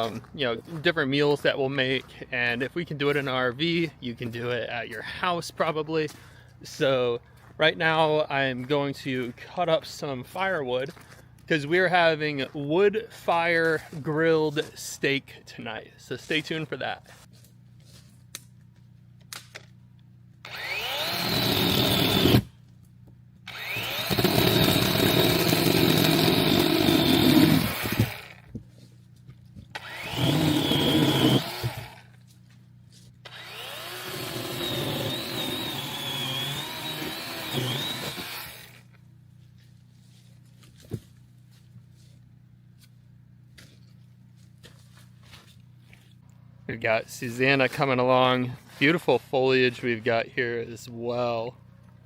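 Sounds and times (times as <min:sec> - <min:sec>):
chainsaw cutting wood: 0:20.4 - 0:22.6, 0:23.4 - 0:28.5, 0:29.6 - 0:32.2, 0:33.2 - 0:39.0.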